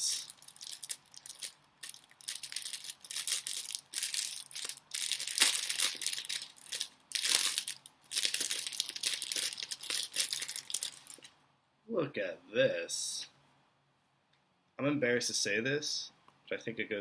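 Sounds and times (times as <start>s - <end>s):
packaging crinkling: 0.0s - 11.3s.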